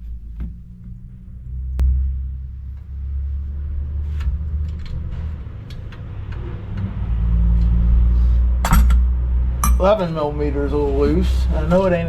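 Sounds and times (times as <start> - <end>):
vehicle engine rumbling: 0.0 - 12.0
wrench clicking on metal: 9.6 - 10.0.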